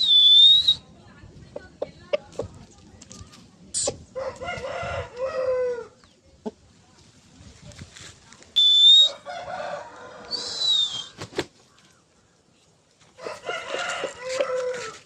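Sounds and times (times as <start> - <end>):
rooster crowing: 4.2 - 6.0, 9.1 - 10.6, 13.2 - 15.0
short high steady whistle: 8.6 - 9.1, 10.3 - 11.1.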